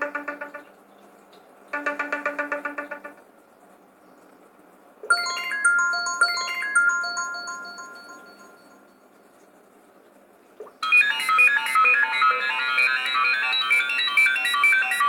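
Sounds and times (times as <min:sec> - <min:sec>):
chime-like bell notes: 0:05.1 - 0:08.9
ringtone with bright notes: 0:05.1 - 0:08.9, 0:10.8 - 0:15.0.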